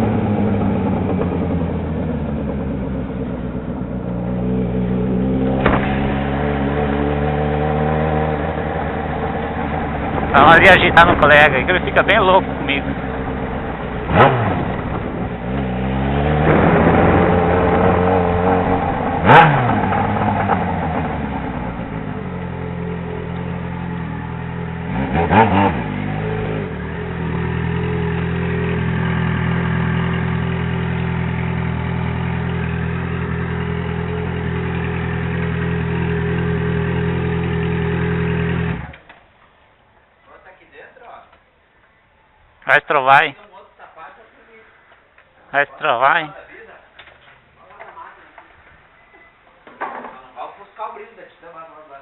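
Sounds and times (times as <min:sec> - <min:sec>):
motorcycle engine revving: 0:00.0 - 0:39.2.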